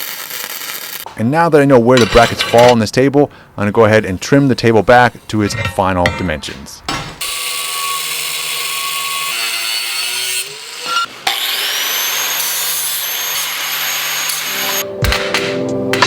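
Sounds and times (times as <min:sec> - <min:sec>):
power tool cutting steel: 0:07.2 - 0:14.8
music: 0:14.4 - 0:16.0.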